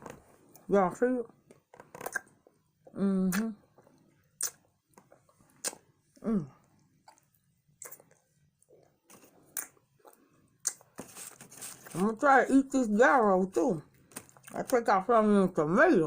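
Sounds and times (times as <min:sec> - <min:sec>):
chewing mouth smacks: 0:03.3 - 0:05.9, 0:06.7 - 0:10.9.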